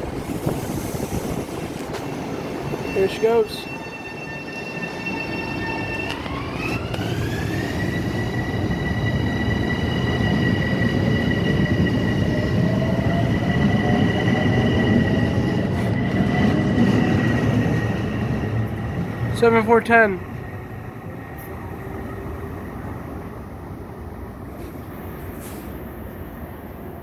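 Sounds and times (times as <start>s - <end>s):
wheels rumbling on rail: 0.0s - 26.8s
lower whine climbing: 3.6s - 23.3s
traction motor whine: 4.0s - 19.3s.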